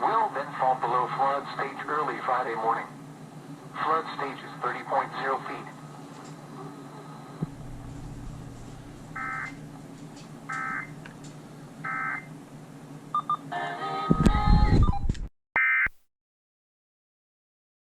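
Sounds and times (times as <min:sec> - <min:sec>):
jumble of noise and tones: 0:00.0 - 0:13.4
low steady hum: 0:00.0 - 0:15.0
buzzy data bursts: 0:07.6 - 0:09.6.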